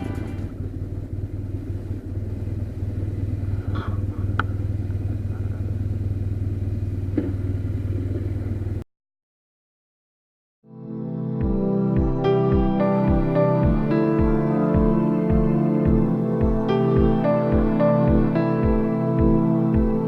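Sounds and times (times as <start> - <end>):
motorcycle engine running: 0.0 - 8.8.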